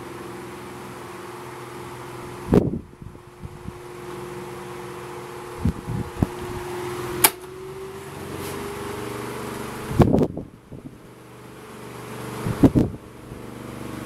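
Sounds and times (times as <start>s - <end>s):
table fan running: 0.0s - 14.0s
fan switch click: 7.2s - 7.6s.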